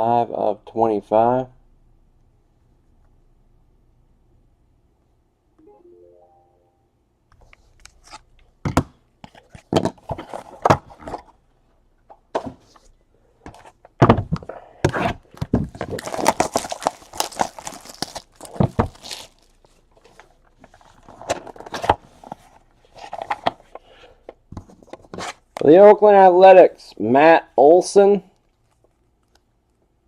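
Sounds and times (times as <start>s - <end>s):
wrappers rustling and crinkling: 15.7s - 23.2s.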